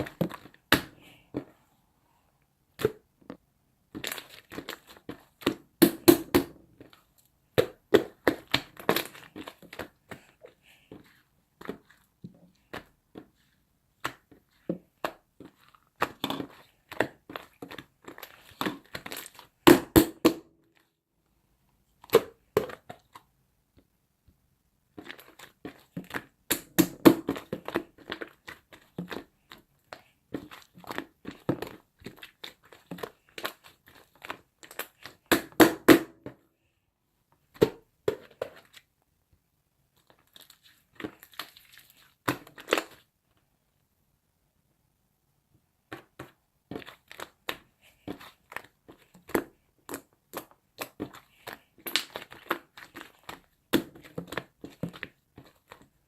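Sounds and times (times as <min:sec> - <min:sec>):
crinkling and crunching: 0:02.8 - 0:05.6, 0:27.0 - 0:35.3, 0:39.9 - 0:43.2, 0:45.9 - 0:56.0.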